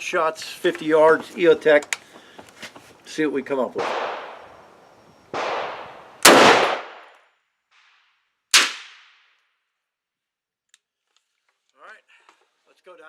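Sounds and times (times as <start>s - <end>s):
rifle shots echoing: 3.8s - 7.1s, 8.5s - 9.2s.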